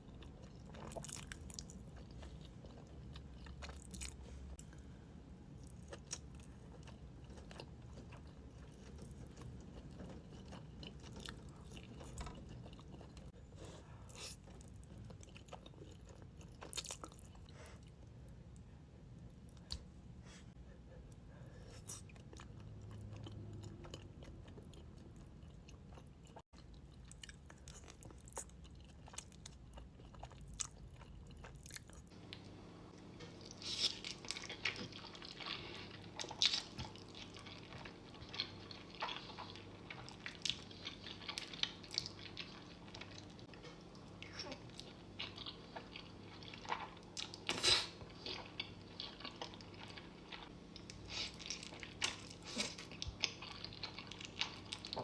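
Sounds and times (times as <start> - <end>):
chewing with wet mouth clicks: 5.6 - 13.4, 33.2 - 47.5, 48.1 - 55.0.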